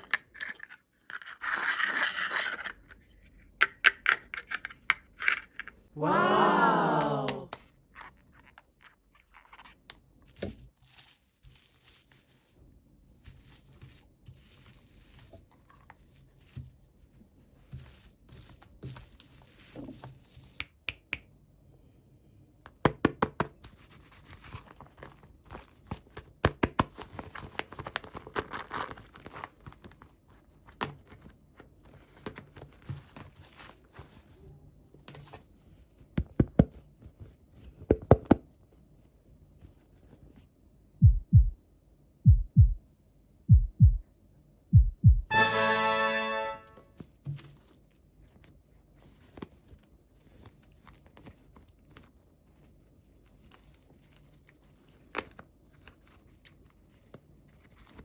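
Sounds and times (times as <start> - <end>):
packaging crinkling and tearing: 27.0 - 30.1.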